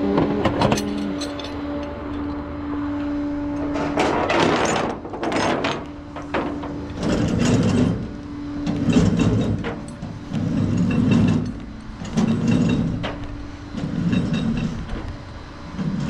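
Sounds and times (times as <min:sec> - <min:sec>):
truck engine humming: 0:00.0 - 0:16.0
winch cable and hook rattling: 0:00.4 - 0:02.4.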